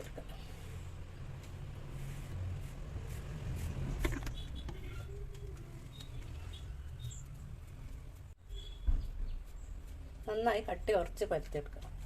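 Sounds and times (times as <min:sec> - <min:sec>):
small squeaks: 0:04.3 - 0:07.3.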